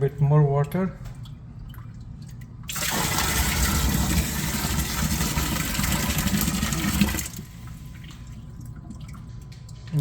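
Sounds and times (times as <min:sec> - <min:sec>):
water pouring into a pit: 0:02.7 - 0:07.4.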